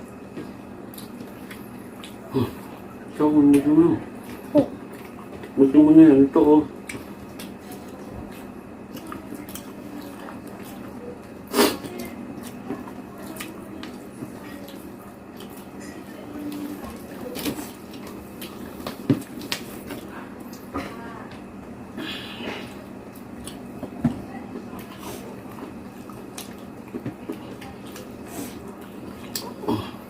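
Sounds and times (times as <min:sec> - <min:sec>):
steady low hum: 0:00.0 - 0:30.0
wet chewing and mouth smacks: 0:00.9 - 0:02.2, 0:23.1 - 0:23.7, 0:24.8 - 0:29.6.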